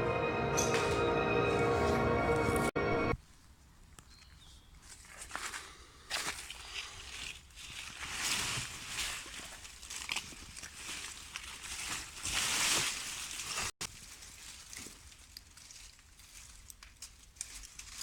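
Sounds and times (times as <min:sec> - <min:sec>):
footsteps through dry leaves: 0:04.8 - 0:18.0.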